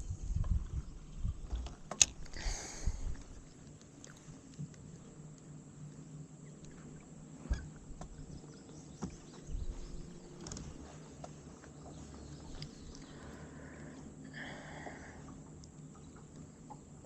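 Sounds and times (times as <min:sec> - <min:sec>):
low steady hum: 0:00.0 - 0:17.0
small clicks and knocks: 0:01.5 - 0:02.3, 0:10.4 - 0:11.4.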